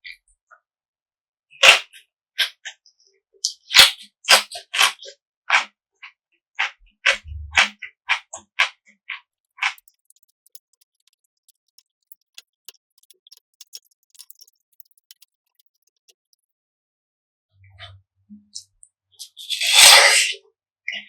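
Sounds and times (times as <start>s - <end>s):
crunchy chewing: 8.6s - 16.4s
wet mouth clicks and smacks: 9.5s - 16.4s.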